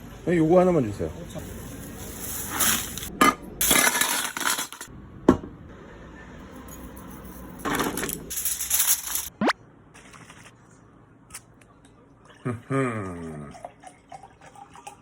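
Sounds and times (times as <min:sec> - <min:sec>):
tableware rustling and scraping: 0:01.4 - 0:04.9, 0:06.6 - 0:09.3.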